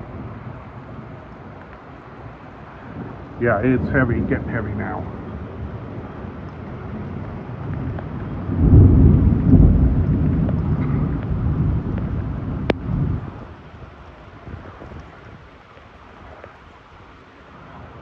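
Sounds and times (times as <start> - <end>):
heavy rain: 0.0 - 18.0
thunder rumbling: 2.9 - 15.5.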